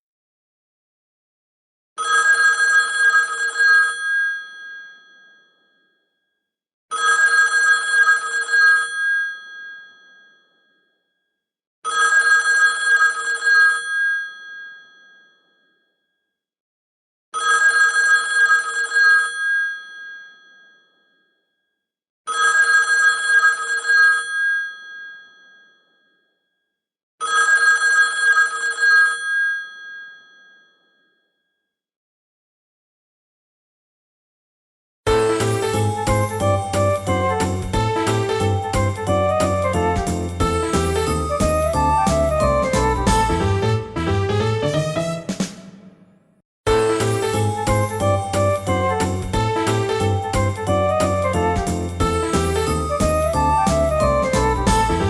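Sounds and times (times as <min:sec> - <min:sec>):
telephone bell ringing: 0:02.0 - 0:05.6, 0:06.9 - 0:10.4, 0:11.9 - 0:15.4, 0:17.4 - 0:20.8, 0:22.3 - 0:25.8, 0:27.2 - 0:30.8, 0:40.6 - 0:42.8.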